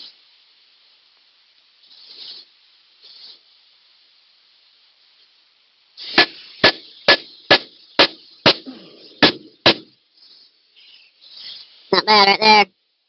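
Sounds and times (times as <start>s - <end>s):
hammer blows on steel: 6.1s - 9.9s.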